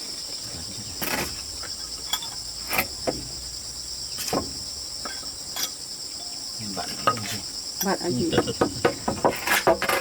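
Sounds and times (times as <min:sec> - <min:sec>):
insects chorus: 0:00.0 - 0:10.0
sharp knocks: 0:01.0 - 0:05.8, 0:08.4 - 0:10.0.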